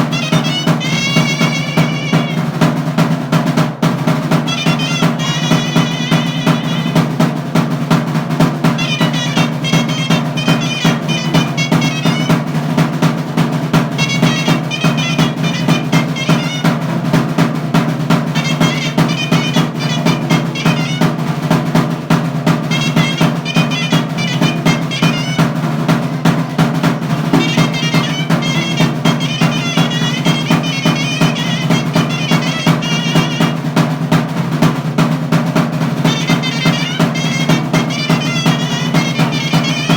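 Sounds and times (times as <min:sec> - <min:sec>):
rapid drum roll: 0:00.0 - 0:39.9
shawm playing trilled melody: 0:00.0 - 0:39.9.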